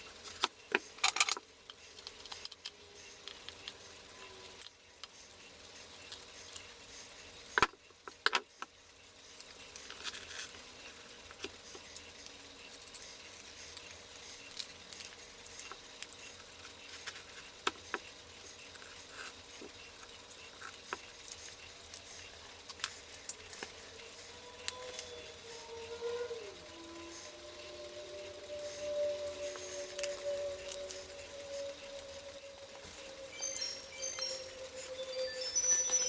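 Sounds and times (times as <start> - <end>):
small clicks of clock parts: 0.2 - 6.7.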